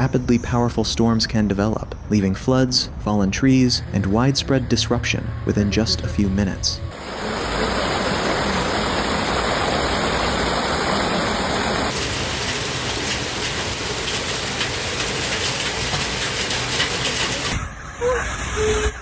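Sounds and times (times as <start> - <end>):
heavy rain hissing: 6.9 - 19.0.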